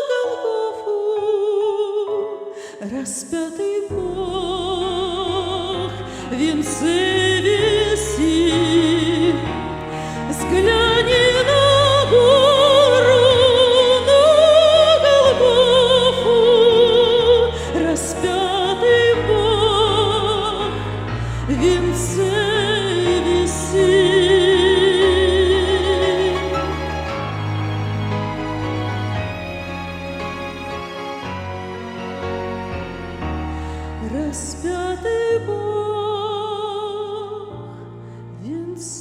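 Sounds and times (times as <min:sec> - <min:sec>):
woman singing operatically: 0:10.2 - 0:20.8, 0:21.5 - 0:27.0
instrumental backing: 0:20.5 - 0:34.6.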